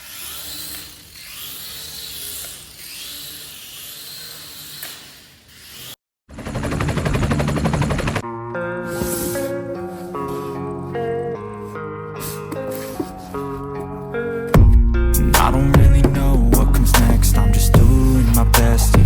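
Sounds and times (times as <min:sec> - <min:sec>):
loud fast rattle: 0:00.0 - 0:08.2
music: 0:08.2 - 0:19.0.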